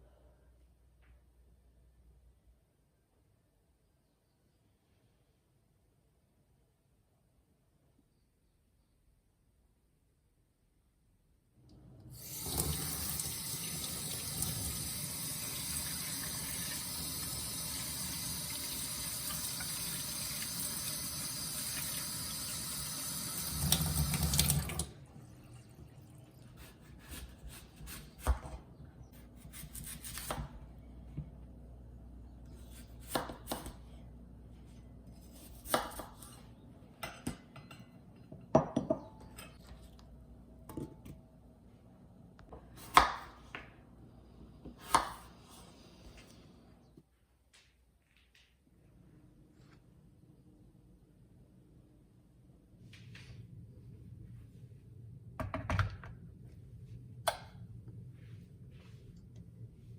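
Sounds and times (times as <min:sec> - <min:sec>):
kitchen tap running: 0:12.1 - 0:26.6.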